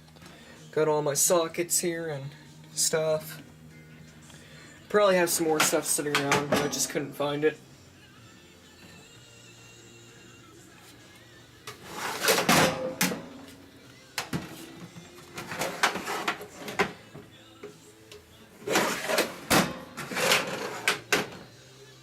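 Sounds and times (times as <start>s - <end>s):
tools clattering: 5.6s - 7.1s, 18.7s - 21.4s
metal toolbox drawers sliding: 11.7s - 13.6s, 14.4s - 17.0s, 18.6s - 21.4s.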